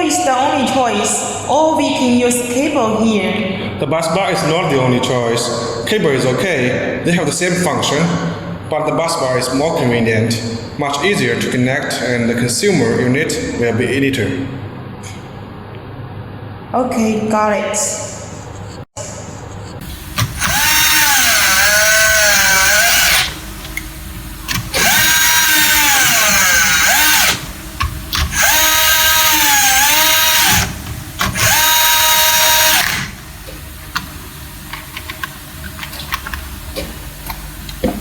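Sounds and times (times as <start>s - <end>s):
cordless electric screwdriver whirring: 20.1s - 23.5s, 24.5s - 33.2s.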